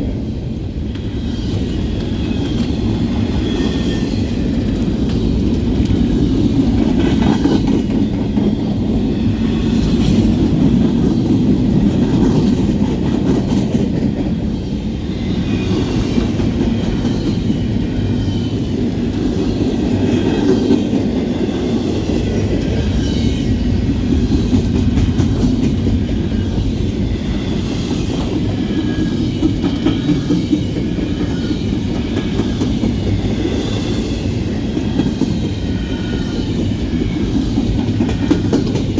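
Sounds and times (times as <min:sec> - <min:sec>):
wheels clicking over rail joints: 0:01.0 - 0:09.0.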